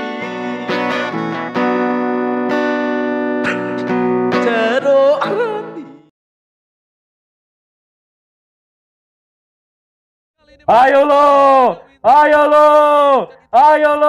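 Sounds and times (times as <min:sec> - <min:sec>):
person singing: 0:00.0 - 0:02.0, 0:03.4 - 0:06.1
strummed acoustic guitar: 0:00.0 - 0:06.1.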